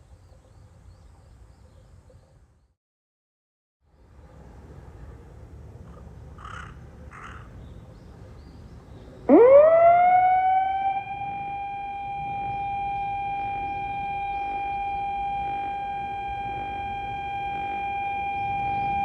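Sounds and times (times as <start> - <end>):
siren from loudspeakers: 9.3 - 19.0.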